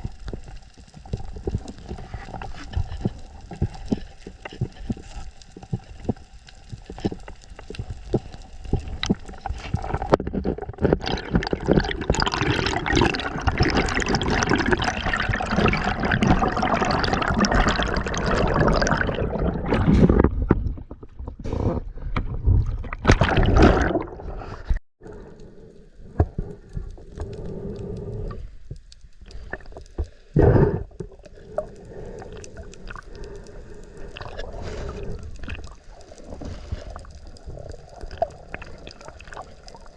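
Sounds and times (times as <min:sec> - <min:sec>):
underwater rushing gurgling water: 0:08.2 - 0:21.0, 0:22.4 - 0:25.2, 0:30.4 - 0:39.9.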